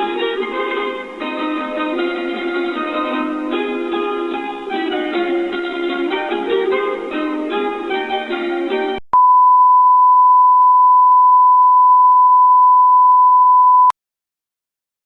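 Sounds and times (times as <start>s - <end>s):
plucked string music: 0.0s - 9.0s
pure test tone beep: 9.2s - 13.9s.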